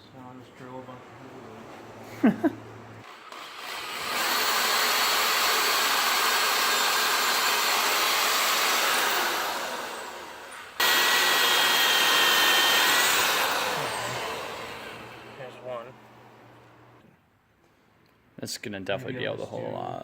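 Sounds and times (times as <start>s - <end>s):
power drill boring metal: 3.0s - 15.6s.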